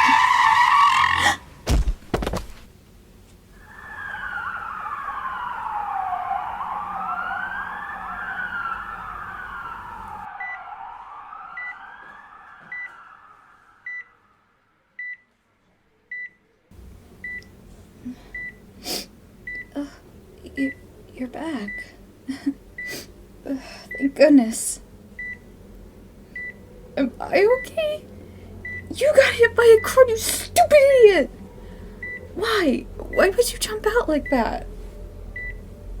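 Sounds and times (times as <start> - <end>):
tyres screeching: 0.0 - 1.4
ambulance siren wailing: 3.6 - 14.6
heart monitor beeping: 10.4 - 10.6, 11.6 - 11.8, 12.6 - 13.0, 13.8 - 14.1, 17.2 - 17.5, 18.3 - 18.6, 25.2 - 25.4, 26.4 - 26.6, 28.6 - 28.9, 32.0 - 32.3, 35.4 - 35.6.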